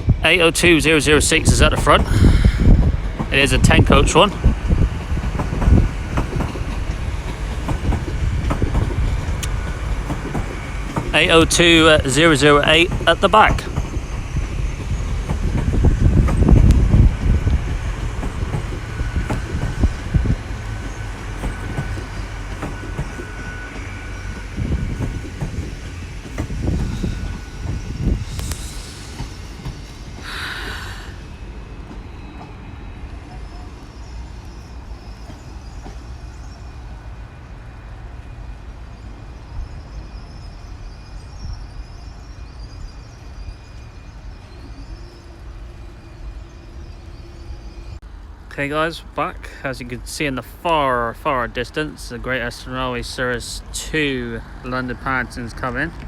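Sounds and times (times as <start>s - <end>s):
train rumbling past: 0.0s - 56.0s.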